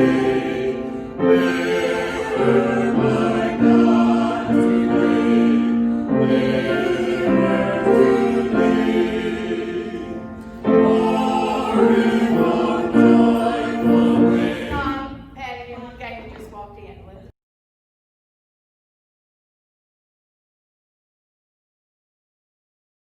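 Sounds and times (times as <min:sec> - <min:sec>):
choir singing held chords: 0:00.0 - 0:15.3.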